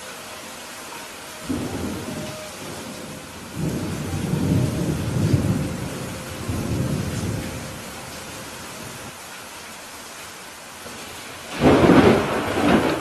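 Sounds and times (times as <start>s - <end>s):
steady rain: 0.0s - 13.0s
thunder rumbling: 1.4s - 9.1s, 11.4s - 13.0s.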